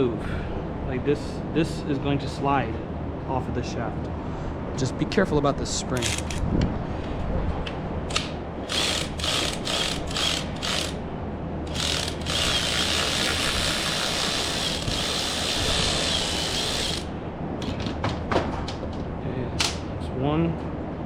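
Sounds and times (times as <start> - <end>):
socket ratchet wrench clicking: 8.1 - 11.0, 11.7 - 17.1.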